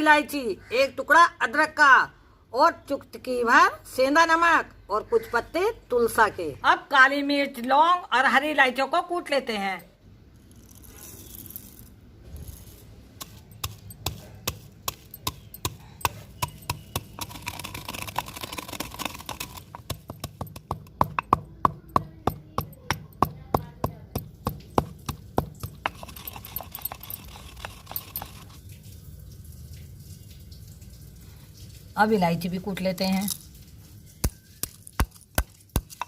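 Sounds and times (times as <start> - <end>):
pestle pounding in a mortar: 13.2 - 28.6, 34.2 - 36.0.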